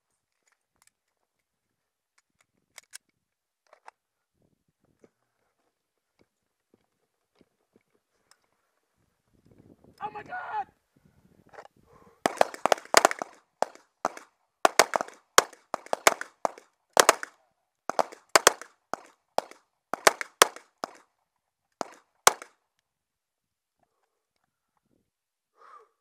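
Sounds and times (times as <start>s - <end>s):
pistol shots: 12.3s - 17.3s, 17.9s - 18.7s, 19.4s - 21.0s, 21.8s - 22.5s.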